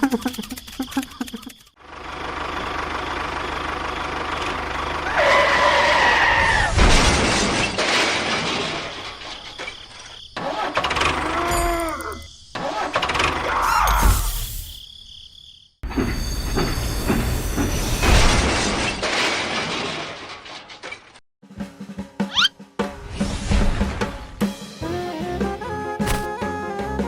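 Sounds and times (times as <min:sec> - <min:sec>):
small engine running: 0:01.5 - 0:05.3
engine whine: 0:01.8 - 0:06.2.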